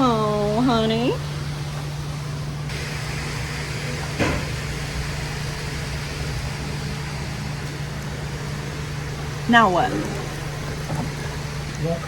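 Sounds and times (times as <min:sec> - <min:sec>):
electric motor humming: 0:02.7 - 0:12.0.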